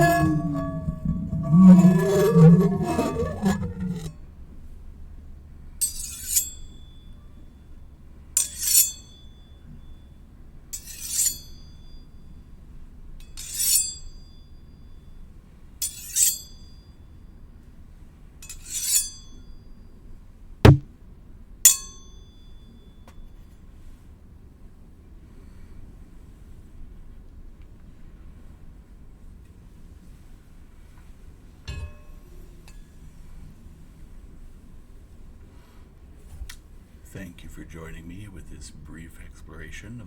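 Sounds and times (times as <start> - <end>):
blade scraping along blade: 0.0 - 4.1.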